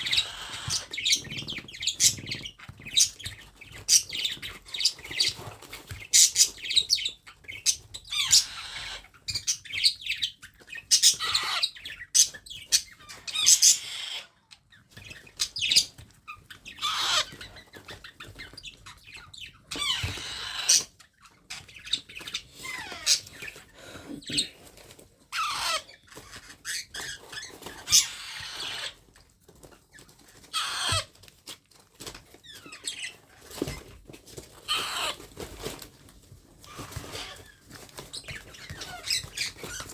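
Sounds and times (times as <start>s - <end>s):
parrot chirping: 0.0s - 5.4s, 6.1s - 14.5s, 15.1s - 24.6s, 25.3s - 29.0s, 30.5s - 31.1s.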